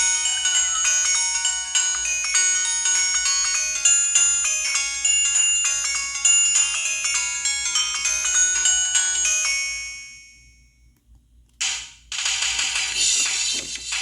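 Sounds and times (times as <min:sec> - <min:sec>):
mobile phone ringtone melody: 0:00.0 - 0:10.9.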